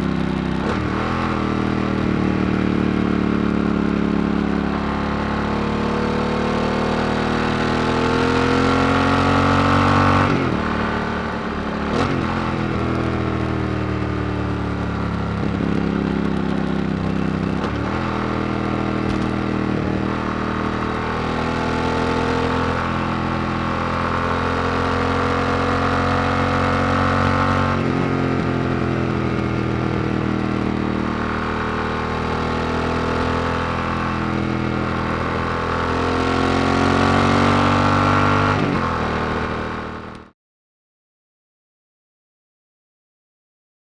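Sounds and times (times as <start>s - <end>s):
motorcycle engine revving: 0.0s - 40.3s.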